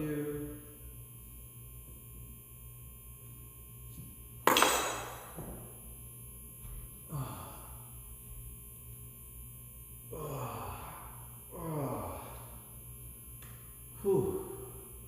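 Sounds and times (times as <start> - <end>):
man sighing: 7.1 - 7.9, 10.1 - 12.6, 14.0 - 14.9.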